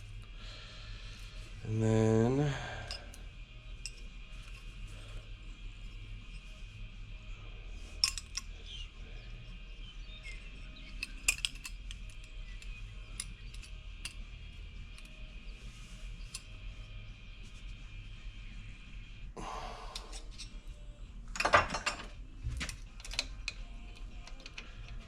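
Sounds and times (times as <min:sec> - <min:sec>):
low workshop hum: 0:00.0 - 0:25.0
hand tools clicking and tapping: 0:10.4 - 0:14.2, 0:21.4 - 0:25.0.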